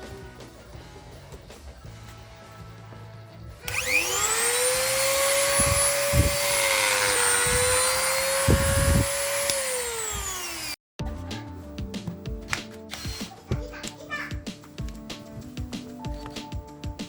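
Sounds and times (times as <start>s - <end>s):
angle grinder whining: 3.7s - 10.8s.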